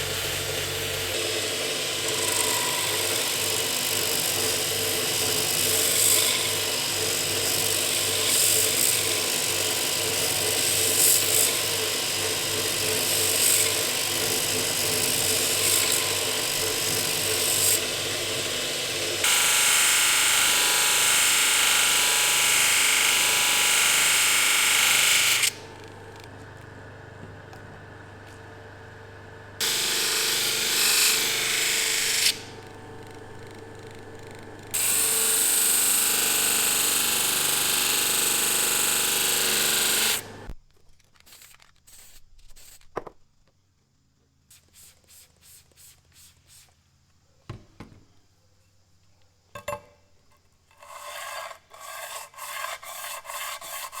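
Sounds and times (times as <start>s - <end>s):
power tool grinding metal: 14.7s - 25.6s, 29.6s - 33.5s, 34.7s - 40.5s.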